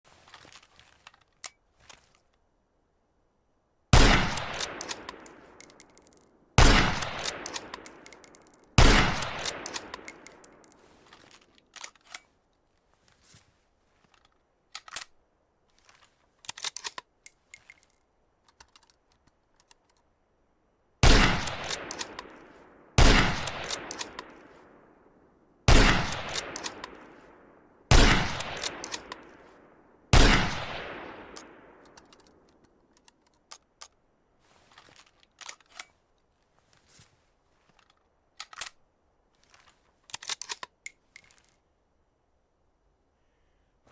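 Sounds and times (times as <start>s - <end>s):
rifle shots echoing: 3.9s - 5.8s, 6.6s - 8.2s, 8.8s - 10.6s, 21.0s - 24.5s, 25.7s - 29.4s, 30.1s - 31.8s
rifle bolt clicking and clanking: 4.2s - 12.3s, 14.1s - 15.2s, 15.8s - 20.1s, 21.2s - 22.6s, 23.2s - 24.6s, 25.8s - 27.3s, 28.0s - 29.5s, 30.2s - 34.0s, 34.7s - 36.0s, 37.7s - 38.8s, 39.4s - 41.6s.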